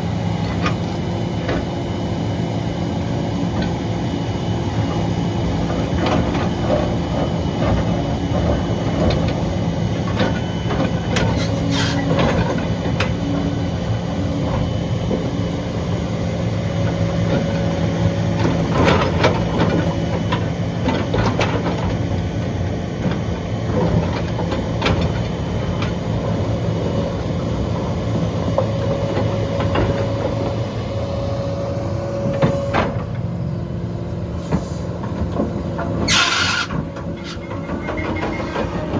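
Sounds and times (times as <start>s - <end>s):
excavator diesel engine running: 0.0s - 38.9s
hydraulic whine: 35.8s - 38.9s.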